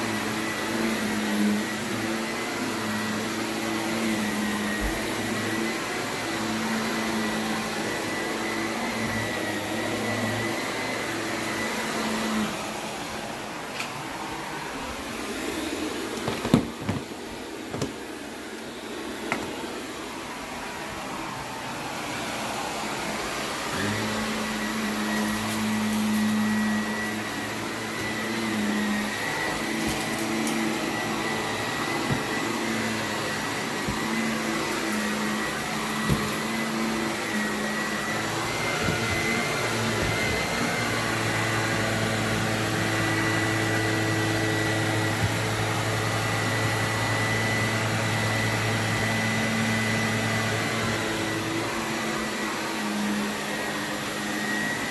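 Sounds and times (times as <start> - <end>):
vacuum cleaner running: 0.0 - 54.9.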